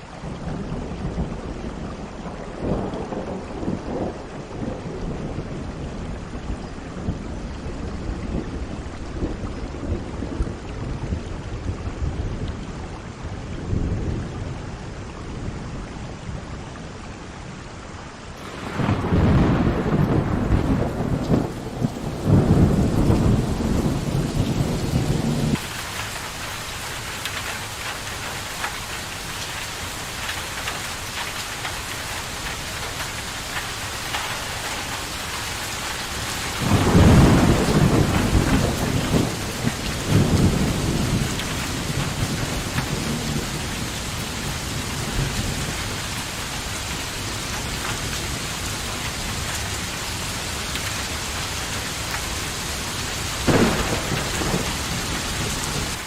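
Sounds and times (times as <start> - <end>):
steady rain falling: 0.0 - 56.0
thunder clap: 18.4 - 26.5, 36.1 - 44.4, 53.4 - 56.0
thunder rumbling: 18.4 - 29.4, 30.0 - 49.8, 50.9 - 56.0.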